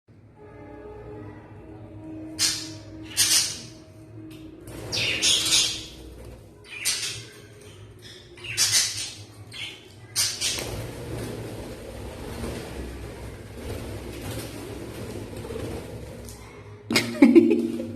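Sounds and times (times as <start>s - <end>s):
budgies squawking: 8.0s - 10.7s.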